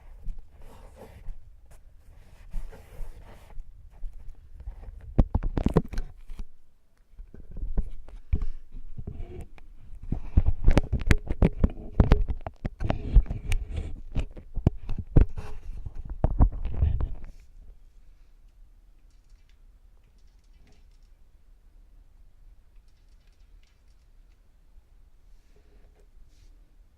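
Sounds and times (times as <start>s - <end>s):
sticky scraping and clicking: 22.8s - 24.4s.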